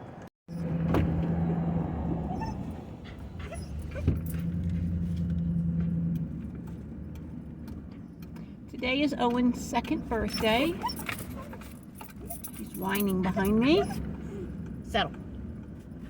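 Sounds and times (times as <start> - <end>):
car hum while driving: 0.0 - 16.0
dog whining and whimpering: 2.2 - 4.4, 9.8 - 12.6, 13.2 - 14.6
dog high cries: 13.4 - 14.5.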